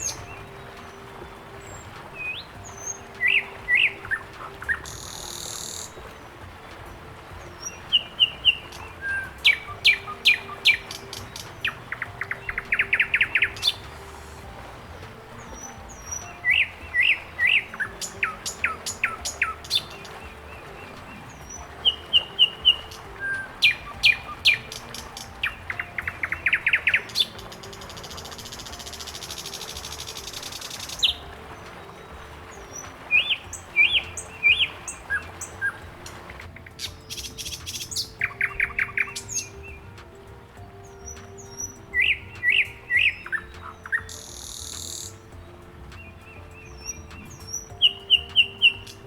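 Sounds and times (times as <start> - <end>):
high buzzing hiss: 0.0 - 38.3
songbirds chirping and trilling: 0.0 - 49.0.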